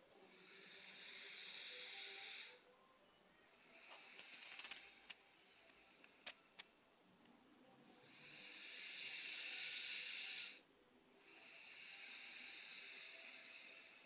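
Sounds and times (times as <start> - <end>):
dog snoring: 8.0 - 10.6, 11.2 - 14.0.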